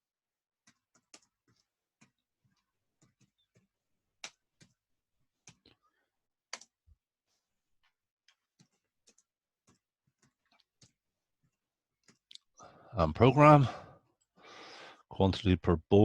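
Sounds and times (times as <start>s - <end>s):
computer keys typing: 0.6s - 4.8s, 8.3s - 11.0s.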